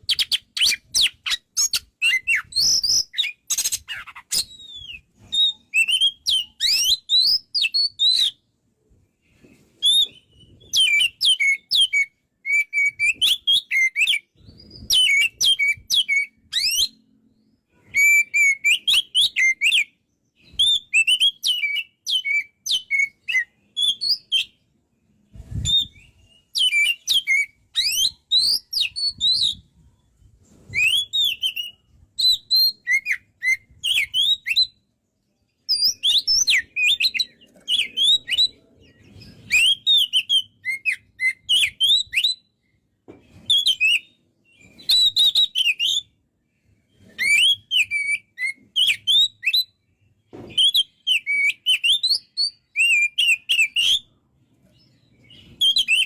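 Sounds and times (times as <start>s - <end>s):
songbird whistling and chattering: 0.0s - 8.4s, 9.8s - 17.0s, 17.8s - 24.6s, 25.4s - 29.8s, 30.7s - 34.9s, 35.6s - 42.5s, 43.3s - 46.2s, 47.0s - 49.8s, 50.5s - 54.1s, 55.2s - 56.0s.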